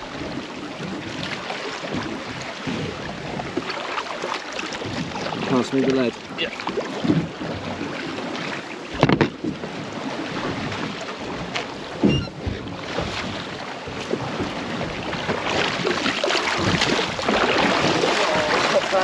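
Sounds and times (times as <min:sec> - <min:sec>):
water lapping against boat hull: 0:00.0 - 0:19.0
knocks on boat: 0:01.0 - 0:03.8, 0:04.6 - 0:19.0
wind on microphone: 0:04.8 - 0:19.0.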